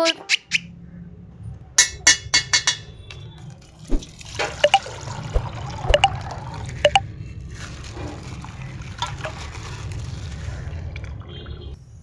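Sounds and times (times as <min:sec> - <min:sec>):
water sloshing and splashing: 0:03.8 - 0:11.8.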